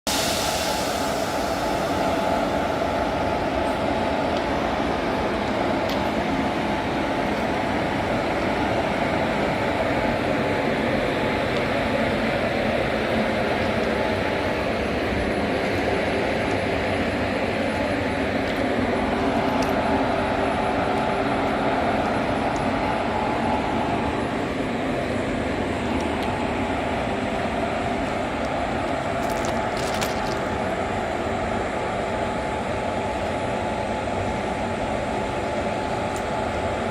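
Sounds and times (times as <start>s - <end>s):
electric locomotive whirring: 0.1s - 36.9s.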